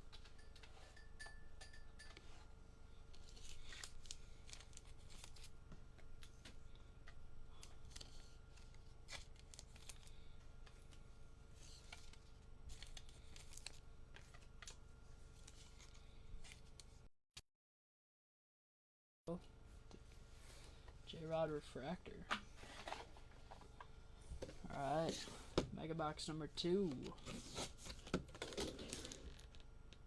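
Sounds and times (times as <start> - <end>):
trading cards rustling and clicking: 3.1 - 16.9
low steady hum: 19.3 - 30.0.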